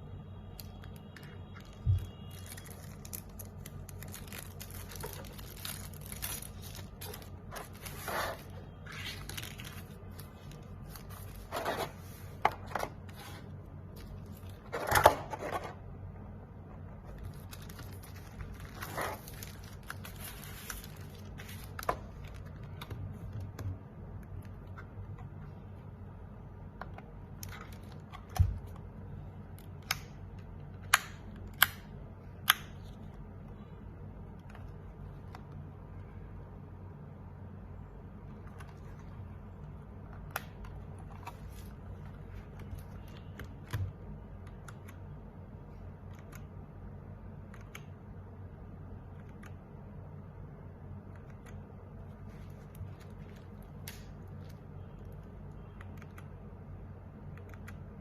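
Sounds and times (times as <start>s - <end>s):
packaging crinkling and rustling: 1.6s - 12.7s, 17.0s - 22.9s.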